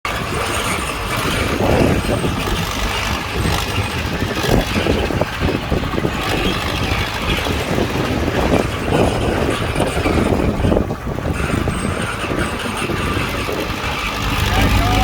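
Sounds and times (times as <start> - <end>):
bulldozer diesel engine rumbling: 0.0 - 15.0.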